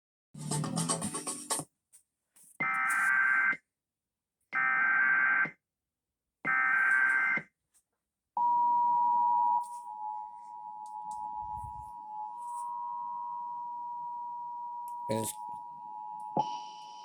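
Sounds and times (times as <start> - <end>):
screeching data tones: 9.5 - 17.0.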